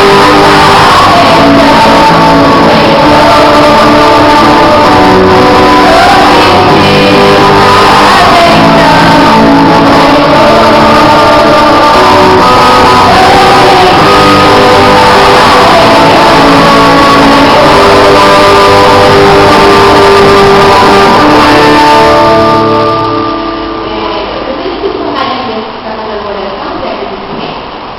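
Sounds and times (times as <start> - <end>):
group singing worship music: 0.0 - 25.0
guitar accompaniment: 0.0 - 25.7.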